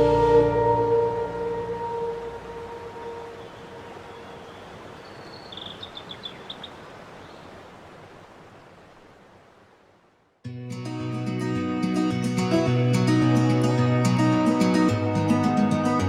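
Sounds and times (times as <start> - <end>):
bird high chirps: 0.0 - 7.5
rushing outdoor noise: 0.0 - 10.3.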